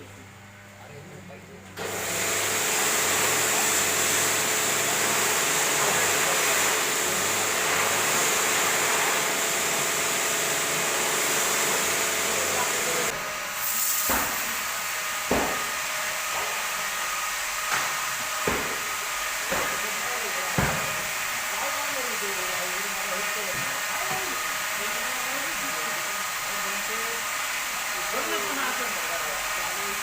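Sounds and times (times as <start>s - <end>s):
pump motor humming: 1.8s - 16.4s
high-pressure water spray hissing: 2.0s - 14.6s.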